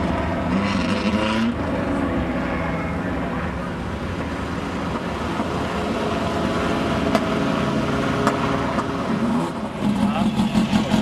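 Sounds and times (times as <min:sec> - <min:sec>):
race vehicle engine running: 0:00.0 - 0:11.0.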